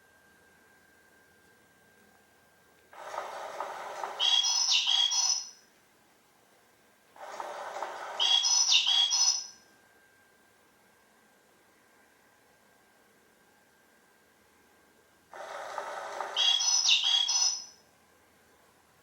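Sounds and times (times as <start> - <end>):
electronic bird chirping: 4.0 - 5.6, 8.1 - 9.6, 16.1 - 17.8
toy mechanism whirring: 7.2 - 9.4.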